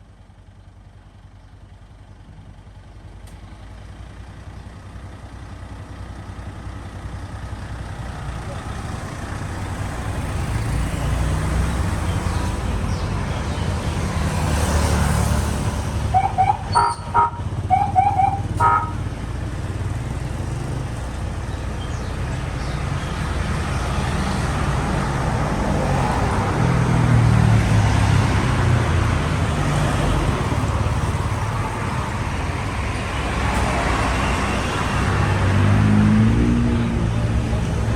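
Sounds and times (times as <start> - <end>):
vehicle engine and road rumble: 0.0 - 37.9
short horn toots: 16.1 - 19.0.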